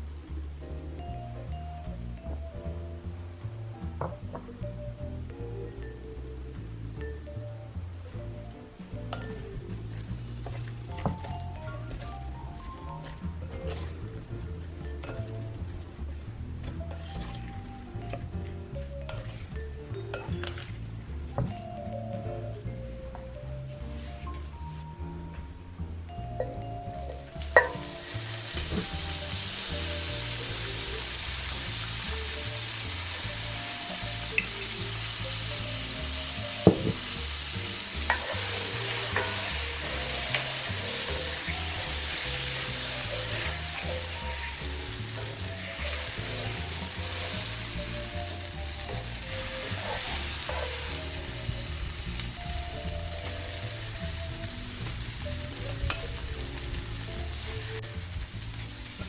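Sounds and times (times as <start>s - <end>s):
shrimp sizzling in a pan: 26.9s - 59.0s
utensil knocking on pan: 36.7s - 37.1s.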